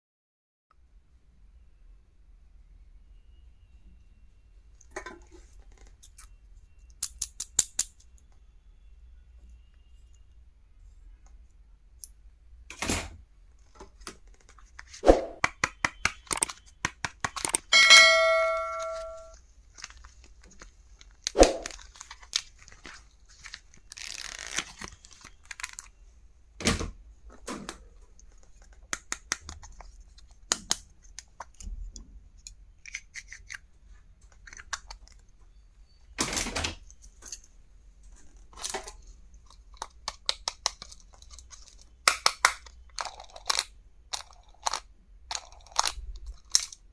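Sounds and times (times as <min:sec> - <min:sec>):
metallic bell-like ring: 0:17.7 - 0:19.3
packaging tearing and rustling: 0:19.7 - 0:25.9.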